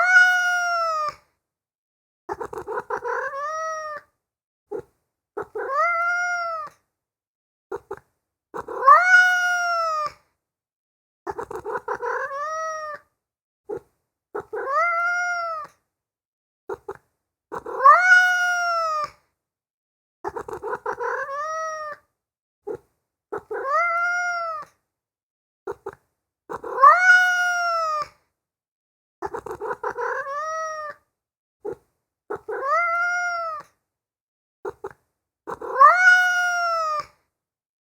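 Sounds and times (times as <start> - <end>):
cat meowing: 0.0 - 1.2, 2.4 - 4.1, 4.7 - 6.8, 8.6 - 10.2, 11.3 - 13.1, 14.4 - 15.8, 17.6 - 19.2, 20.3 - 22.1, 23.4 - 24.8, 25.7 - 28.2, 29.2 - 31.0, 32.3 - 33.8, 34.7 - 37.2.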